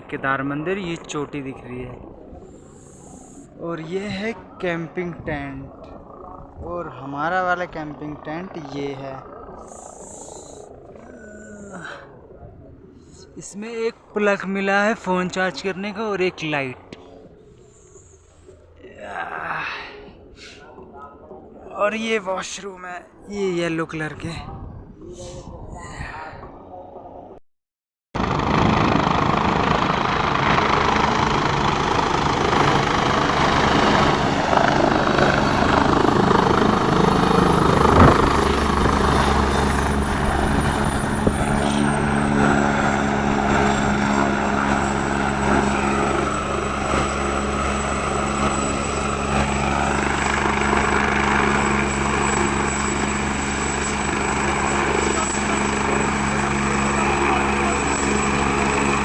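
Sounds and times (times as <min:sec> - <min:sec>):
helicopter rotor and engine: 0:00.0 - 0:18.8, 0:28.2 - 0:59.0
turbine whine: 0:28.2 - 0:59.0.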